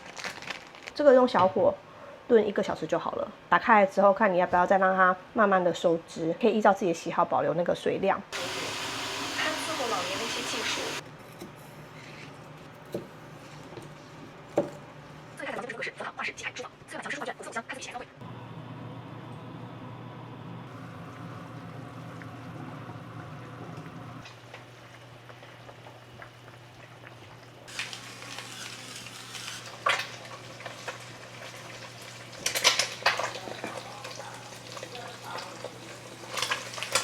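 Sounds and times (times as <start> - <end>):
food sizzling in a pan: 8.4 - 11.0, 26.4 - 37.0.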